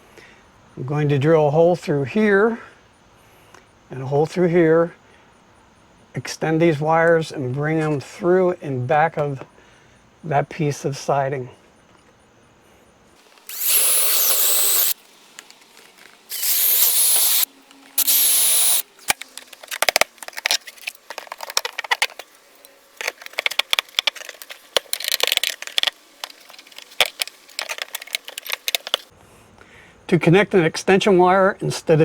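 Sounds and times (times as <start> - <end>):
power drill boring holes: 13.5 - 15.0, 16.3 - 18.8.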